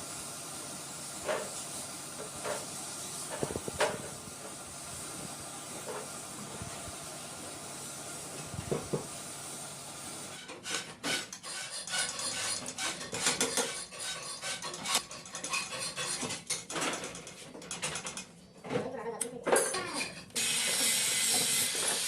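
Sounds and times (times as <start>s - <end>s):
steady hiss: 0.0s - 10.4s.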